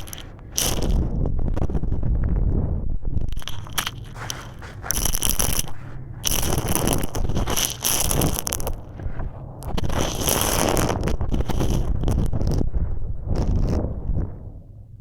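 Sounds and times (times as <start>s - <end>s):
concrete being crushed: 3.4s - 12.6s.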